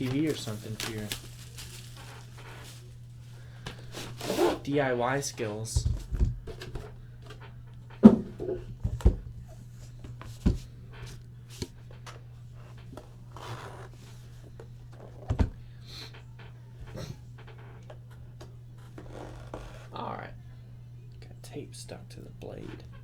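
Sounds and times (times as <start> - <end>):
box scraping: 0.0 - 3.1, 3.7 - 4.7
steady low hum: 0.0 - 23.0
blade slitting packing tape: 3.9 - 4.6
cardboard box knocks: 8.0 - 9.2.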